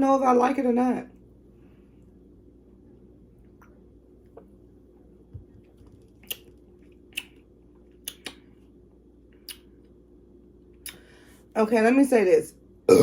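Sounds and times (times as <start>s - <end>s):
lip smacks and mouth clicks: 5.8s - 8.6s, 9.3s - 10.0s, 10.7s - 11.0s.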